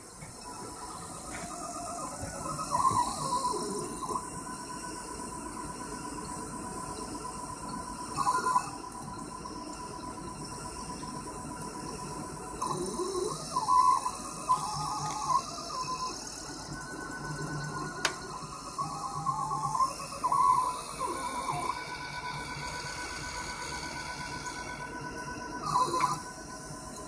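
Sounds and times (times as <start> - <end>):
stepper motors whining: 12.6 - 27.0.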